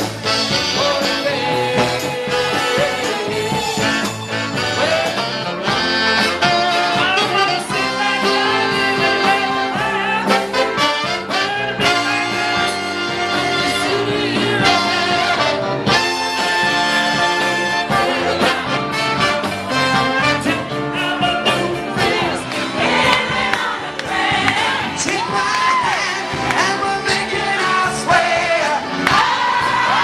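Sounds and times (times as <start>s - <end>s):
trumpet and trombone: 0.0s - 23.4s, 24.2s - 30.0s
live party band playing: 0.0s - 30.0s
person singing: 0.6s - 5.4s.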